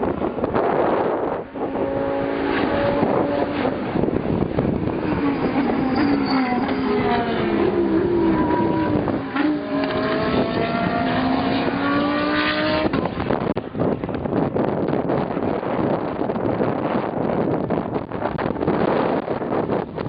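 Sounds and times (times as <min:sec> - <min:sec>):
race cars passing at speed: 0:00.0 - 0:14.3.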